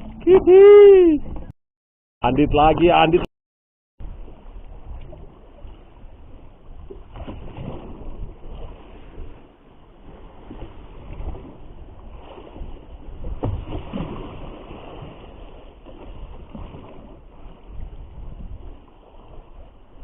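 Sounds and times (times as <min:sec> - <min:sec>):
waves washing: 0:04.0 - 0:20.0
wind rumbling on microphone: 0:04.0 - 0:20.0.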